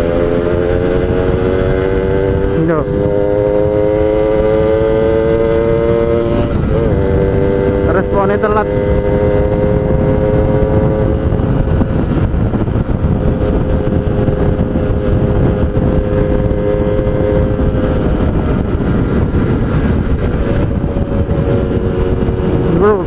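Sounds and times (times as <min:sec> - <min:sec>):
heavy rushing noise: 0:00.0 - 0:23.0
motorcycle engine running: 0:00.0 - 0:23.0
rider talking: 0:02.3 - 0:03.6, 0:06.9 - 0:09.6, 0:22.4 - 0:23.0.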